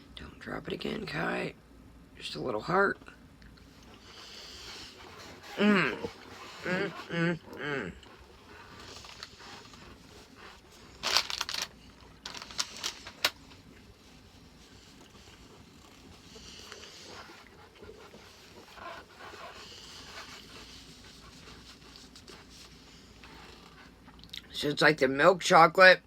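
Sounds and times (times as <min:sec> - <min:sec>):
quiet chewing: 0:14.6 - 0:24.5.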